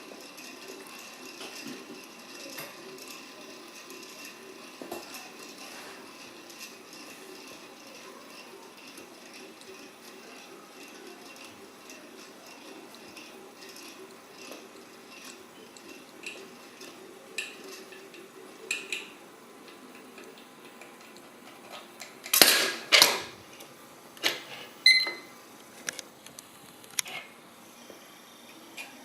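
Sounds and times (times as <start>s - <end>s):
metal toy frame clattering: 0.0s - 19.2s, 20.0s - 23.4s.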